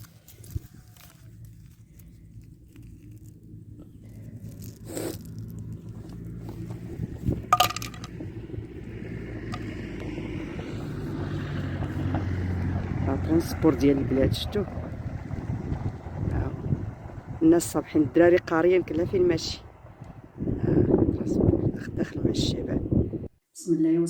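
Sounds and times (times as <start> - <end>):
vehicle engine hum: 0.0 - 23.4
knocks and rattles: 6.1 - 8.6.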